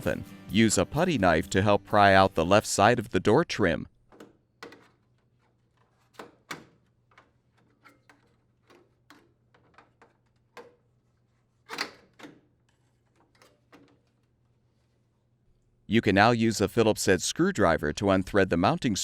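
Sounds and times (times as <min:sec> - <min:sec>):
plastic trim clicking and snapping: 0:04.1 - 0:10.9, 0:11.7 - 0:14.4.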